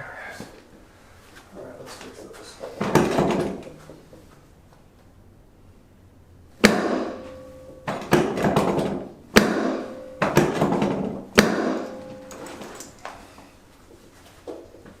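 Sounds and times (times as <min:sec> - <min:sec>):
sharp knocks with ringing decay: 0:06.6 - 0:12.7.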